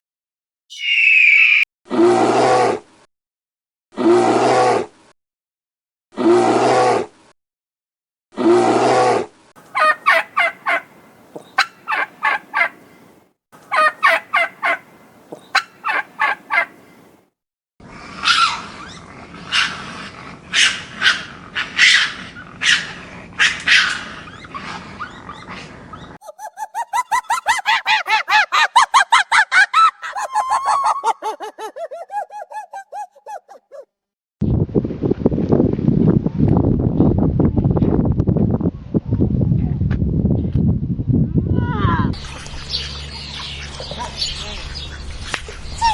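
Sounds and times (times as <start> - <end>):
turkeys gobbling: 9.7 - 10.9, 11.5 - 12.8, 13.7 - 14.8, 15.5 - 16.7, 29.8 - 33.7.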